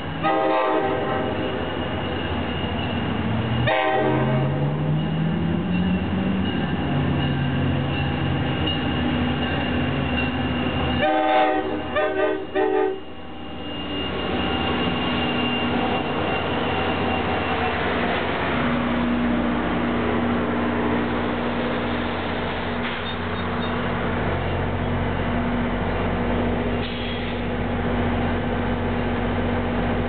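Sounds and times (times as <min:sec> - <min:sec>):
locomotive horn: 0:00.2 - 0:01.4, 0:03.6 - 0:04.6, 0:11.0 - 0:13.1.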